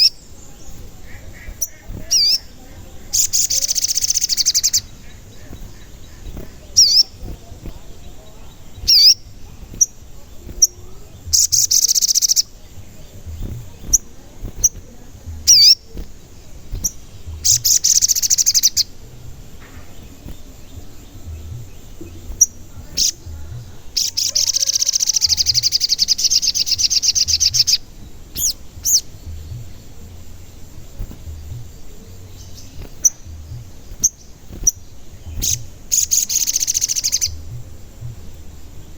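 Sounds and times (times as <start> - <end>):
bird high trills: 0.0 - 12.6, 19.9 - 31.2, 31.8 - 37.5
bird chirps: 0.0 - 38.9.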